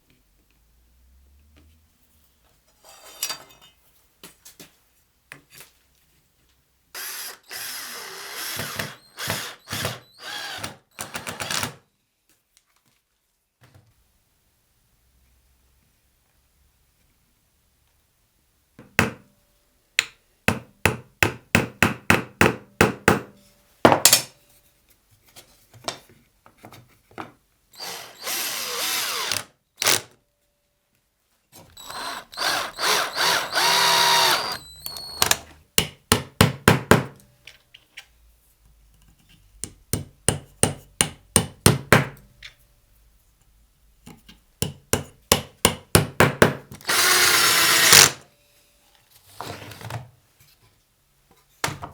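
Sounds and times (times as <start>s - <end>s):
power drill driving screws into wood: 7.0s - 11.8s, 27.8s - 30.1s, 31.8s - 35.5s, 46.8s - 48.2s.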